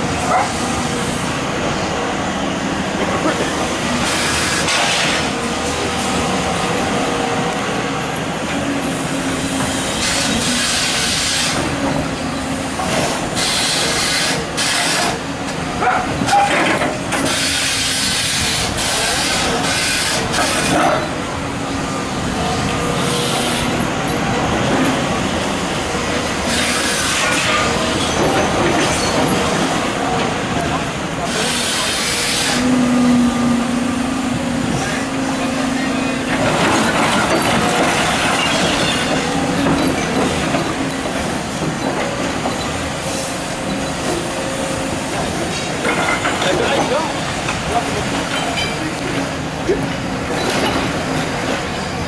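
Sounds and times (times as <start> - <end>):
excavator diesel engine running: 0.0 - 52.0
hydraulic hissing surges: 12.6 - 15.2, 31.1 - 45.8.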